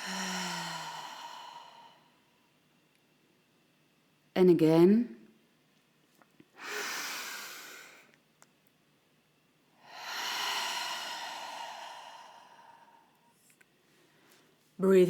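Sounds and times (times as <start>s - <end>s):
woman breathing deeply: 0.0s - 2.5s, 6.6s - 8.2s, 9.8s - 13.4s.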